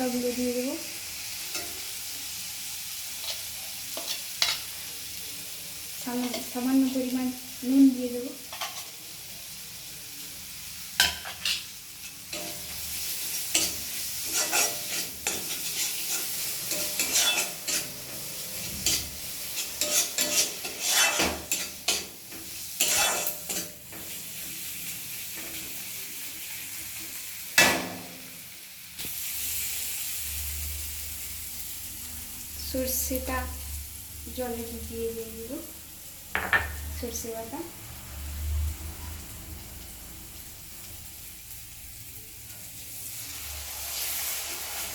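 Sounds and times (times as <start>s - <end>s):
spice paste sizzling in oil: 0.0s - 44.9s
spatula scraping a pan: 3.2s - 4.7s, 8.5s - 9.0s, 12.3s - 24.4s.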